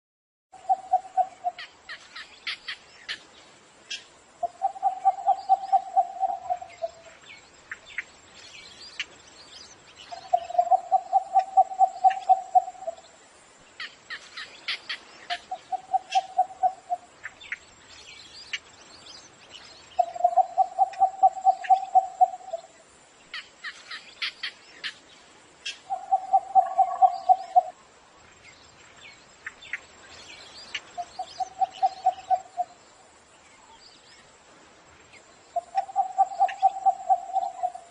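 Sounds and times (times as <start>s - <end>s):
high chirps of small birds: 0.6s - 13.0s, 13.7s - 27.7s, 28.4s - 32.8s, 35.1s - 37.9s
bird calling in low pulsed notes: 4.4s - 7.0s, 10.2s - 13.0s.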